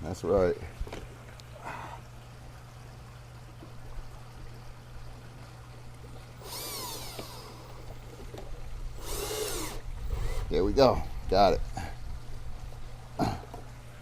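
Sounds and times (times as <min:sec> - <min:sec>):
water trickling: 0:00.0 - 0:14.0
cordless drill whirring: 0:06.4 - 0:08.0, 0:09.0 - 0:10.6.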